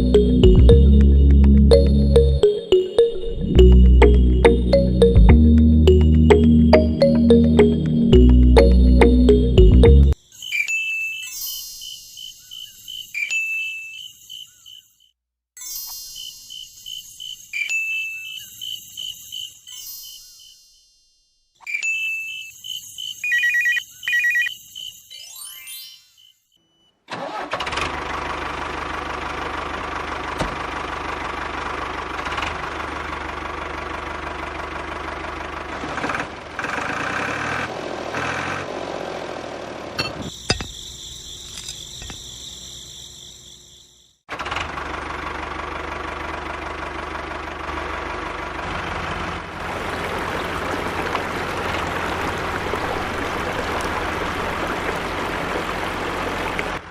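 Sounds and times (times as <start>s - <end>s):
tractor engine running: 0.0s - 10.2s, 27.1s - 42.3s, 44.3s - 56.9s
bright chime sound effects: 0.0s - 14.2s, 15.6s - 18.6s, 19.6s - 22.6s, 25.1s - 26.9s.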